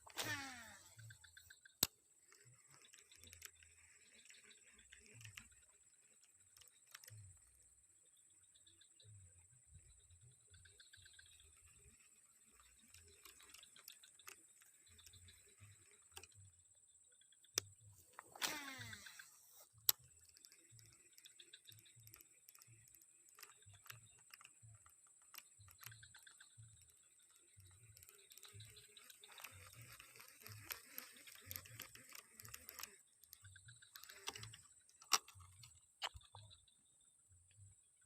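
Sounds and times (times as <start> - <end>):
clicks: 17.6 - 36.6.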